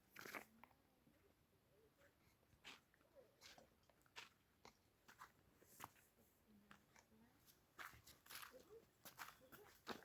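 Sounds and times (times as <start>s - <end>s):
faint crunch: 0.0s - 0.8s, 2.0s - 10.0s.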